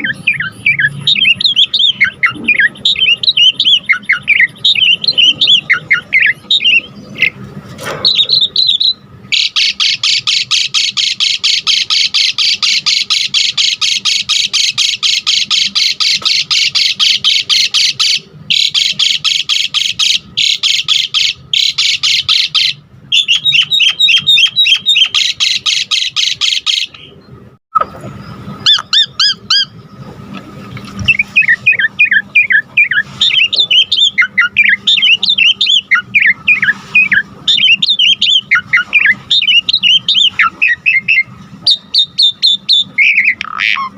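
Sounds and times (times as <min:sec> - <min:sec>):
bird whistles and sliding notes: 0:31.0 - 0:43.4.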